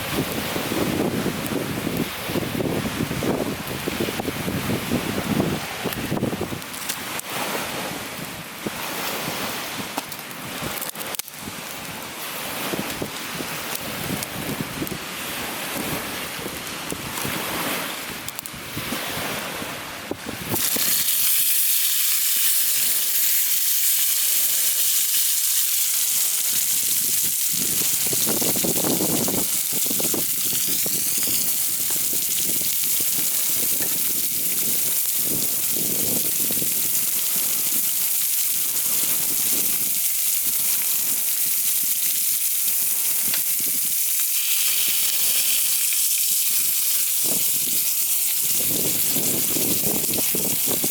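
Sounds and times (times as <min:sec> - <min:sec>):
wind gusts on microphone: 0:00.0 - 0:10.8, 0:11.4 - 0:23.5, 0:26.4 - 0:50.9
food sizzling on a hot pan: 0:20.4 - 0:50.9.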